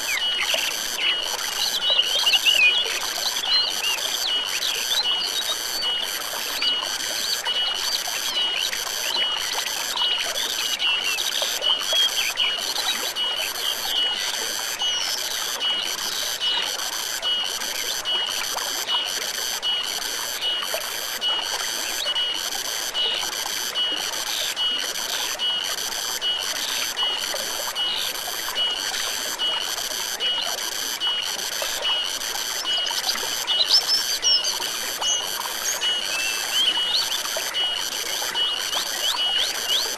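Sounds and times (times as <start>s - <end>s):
stream trickling: 0.0s - 39.9s
bird chirps: 32.6s - 37.3s.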